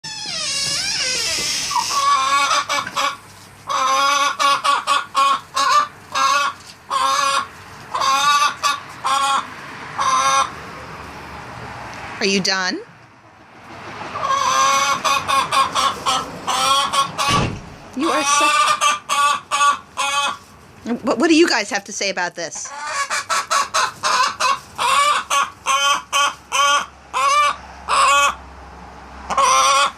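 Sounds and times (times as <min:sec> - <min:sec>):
chicken squawking: 0:00.2 - 0:10.6, 0:14.1 - 0:17.4, 0:18.0 - 0:20.5, 0:22.6 - 0:28.4, 0:29.3 - 0:29.9.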